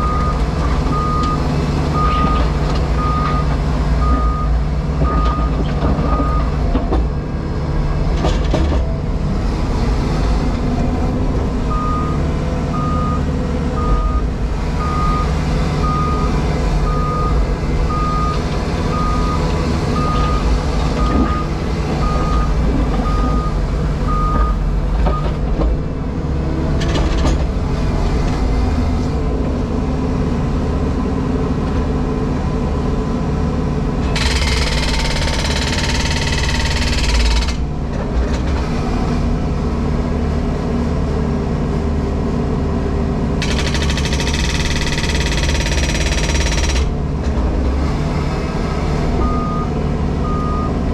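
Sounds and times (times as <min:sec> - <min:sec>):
reversing alarm beeping: 0:00.0 - 0:06.5, 0:11.7 - 0:25.3, 0:49.2 - 0:50.8
diesel engine running: 0:00.0 - 0:50.9.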